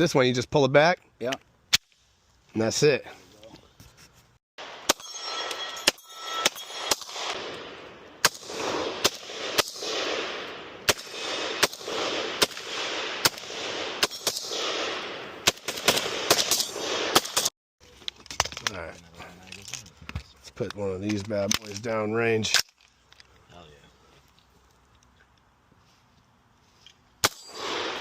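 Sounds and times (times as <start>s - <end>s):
gunshots with rolling echo: 4.6s - 17.5s, 27.2s - 28.0s.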